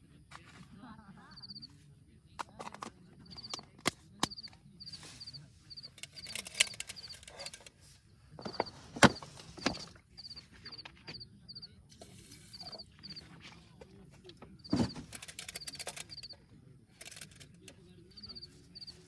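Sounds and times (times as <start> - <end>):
sharp clicks: 2.4 - 7.7.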